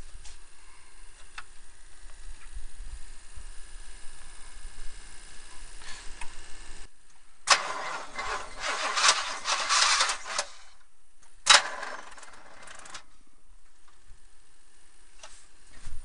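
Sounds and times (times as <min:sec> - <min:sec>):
car starter cranking engine: 0:07.5 - 0:10.8, 0:11.4 - 0:13.1.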